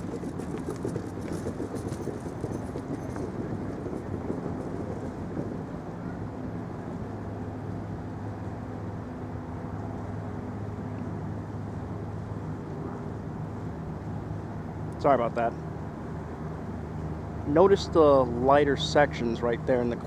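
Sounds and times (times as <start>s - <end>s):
street noise: 0.0s - 20.0s.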